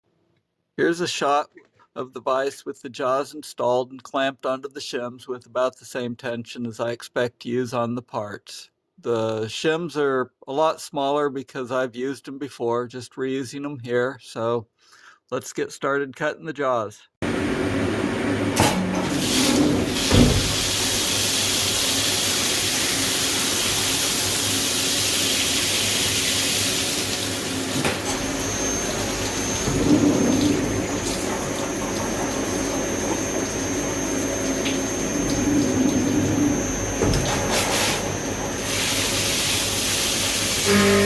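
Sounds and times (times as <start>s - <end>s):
coolant rushing: 17.2s - 41.0s
high spindle whine: 17.2s - 41.0s.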